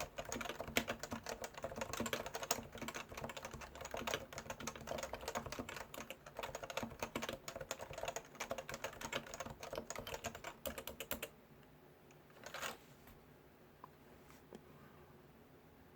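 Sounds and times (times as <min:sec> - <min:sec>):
fast keyboard typing: 0:00.0 - 0:11.3, 0:12.4 - 0:12.8.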